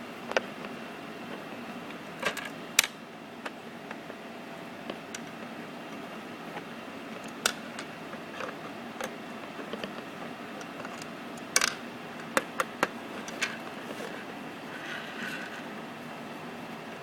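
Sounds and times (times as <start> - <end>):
tools and plastic parts clicking: 7.2 - 14.1.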